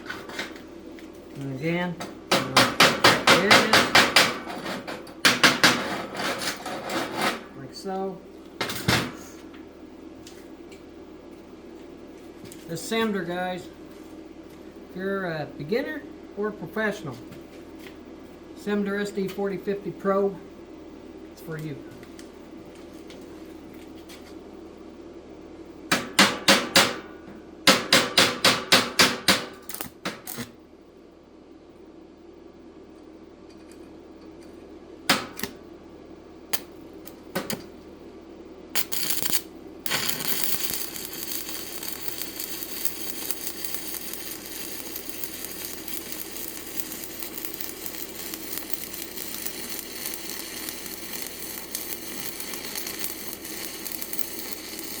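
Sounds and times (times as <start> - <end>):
welding arc sizzling crackle: 0.0 - 16.0, 29.5 - 30.6, 36.5 - 37.7, 38.7 - 55.0.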